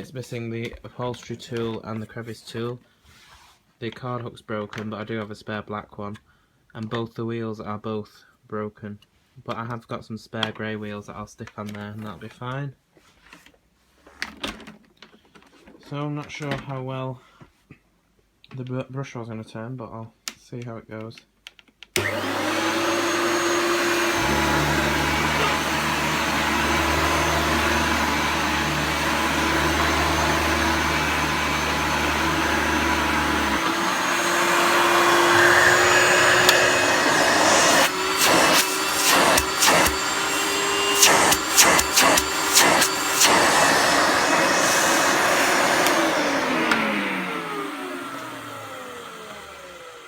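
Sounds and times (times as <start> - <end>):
vacuum cleaner motor running: 22.0 - 50.0.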